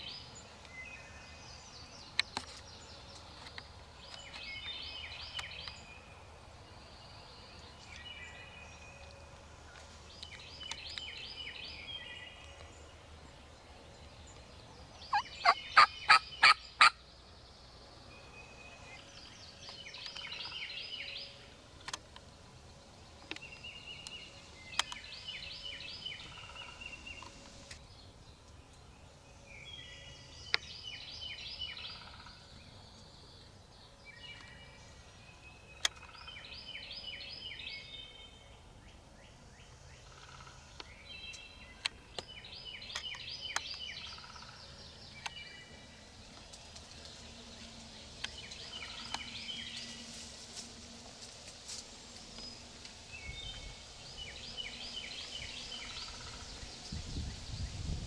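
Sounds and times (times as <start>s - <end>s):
turkey gobbling: 15.1s - 17.0s
sharp clicks: 23.2s - 25.0s.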